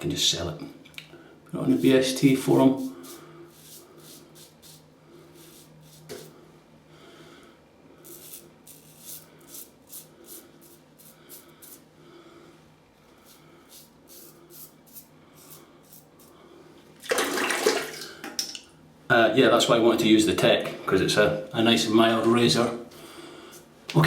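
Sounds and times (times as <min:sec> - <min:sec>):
razor scraping stubble: 0:01.7 - 0:04.8, 0:08.1 - 0:11.8, 0:13.2 - 0:16.3
tap water gushing: 0:17.0 - 0:18.6.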